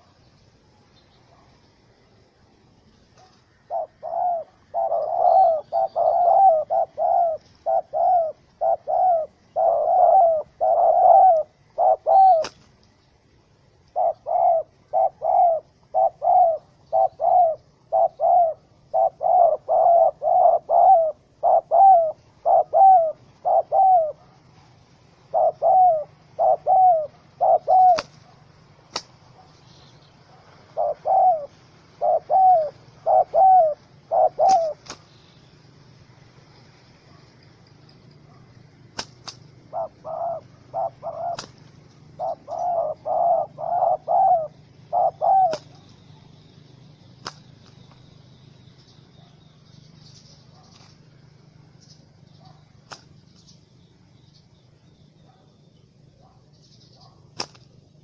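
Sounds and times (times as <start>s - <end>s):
dove cooing: 3.2s - 12.7s, 13.8s - 35.2s, 35.9s - 54.4s, 56.2s - 58.0s.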